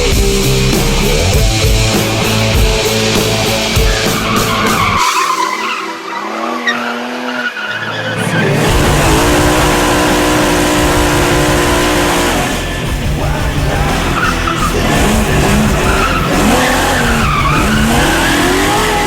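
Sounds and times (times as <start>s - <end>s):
tyres squealing: 0.6s - 19.0s
car engine at high revs: 5.9s - 19.0s.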